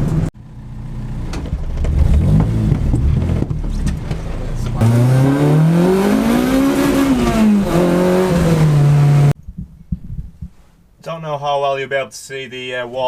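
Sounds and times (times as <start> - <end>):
car engine accelerating: 0.0 - 9.4.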